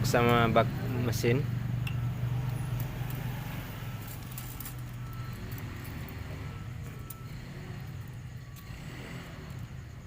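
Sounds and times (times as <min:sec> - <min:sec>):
metal parts clicking: 0:04.0 - 0:06.2.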